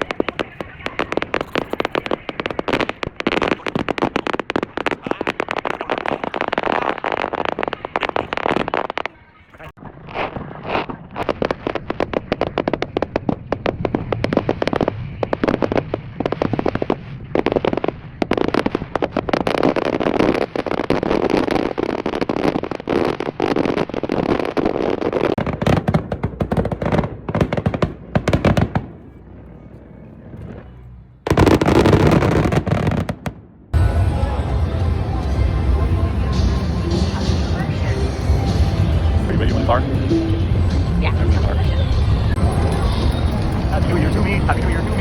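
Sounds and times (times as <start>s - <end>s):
fireworks bangs and crackles: 0.0s - 45.0s
loud steady rushing noise: 33.8s - 45.0s.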